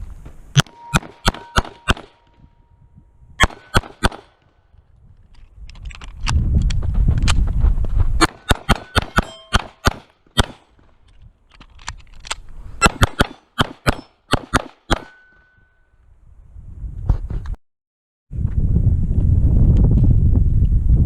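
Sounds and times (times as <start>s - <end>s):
pistol shots: 0.6s - 2.3s, 3.4s - 4.4s, 8.2s - 10.8s, 12.8s - 15.3s
short metallic ring: 0.6s - 2.7s, 8.7s - 9.8s, 14.9s - 16.0s.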